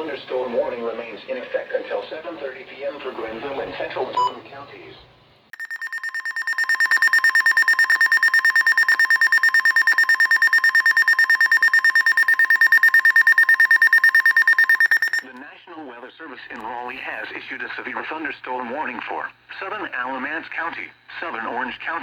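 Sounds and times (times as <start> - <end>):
fast-pulsing electronic beep: 5.6 - 15.3.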